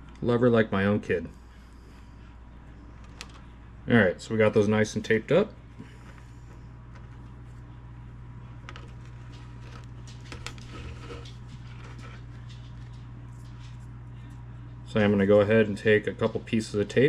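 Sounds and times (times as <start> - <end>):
low electrical hum: 0.0 - 17.0
hands handling wires and tape: 3.0 - 3.5, 5.8 - 7.7, 8.6 - 14.0.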